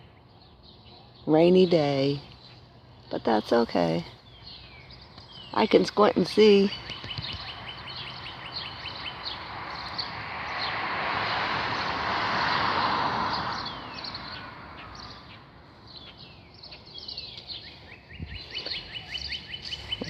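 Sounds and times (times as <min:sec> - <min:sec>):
small birds chirping: 0:00.0 - 0:12.6, 0:13.2 - 0:20.0
vehicle passing by: 0:07.4 - 0:17.6.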